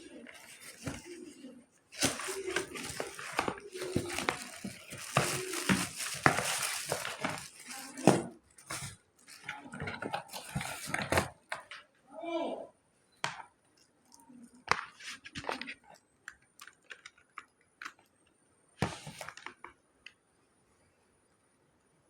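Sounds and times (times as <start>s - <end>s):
plastic wrapping crinkling: 0.1s - 1.3s, 1.9s - 11.8s.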